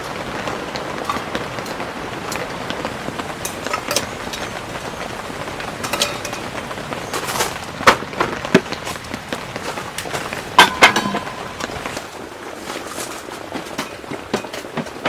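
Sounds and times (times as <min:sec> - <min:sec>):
heavy rain: 0:00.0 - 0:15.0
sharp taps and knocks: 0:07.2 - 0:12.0.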